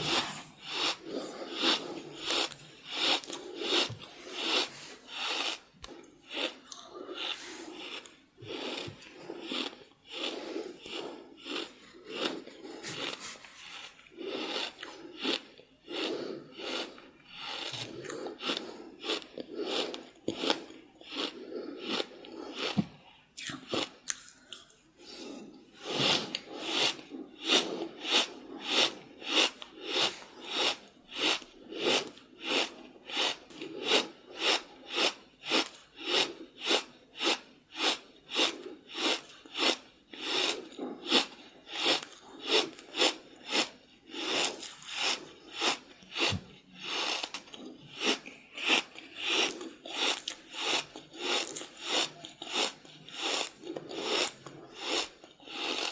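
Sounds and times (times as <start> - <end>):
heavy breathing: 0.0 - 23.1, 24.9 - 36.6.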